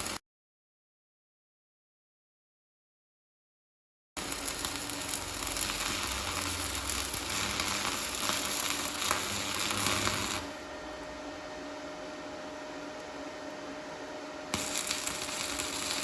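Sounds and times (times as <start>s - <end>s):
welding arc crackling: 0.0s - 0.2s, 4.2s - 10.7s, 14.5s - 16.0s
faint hum: 4.2s - 16.0s.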